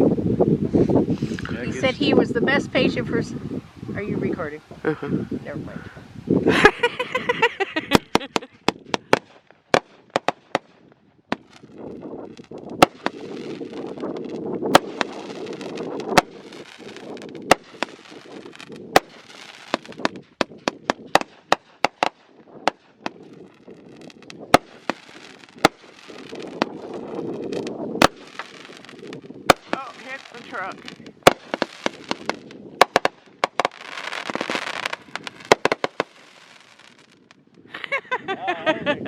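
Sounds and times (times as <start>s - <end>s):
fireworks hissing crackle: 6.4s - 38.0s
fireworks cracking and popping: 6.6s - 37.8s.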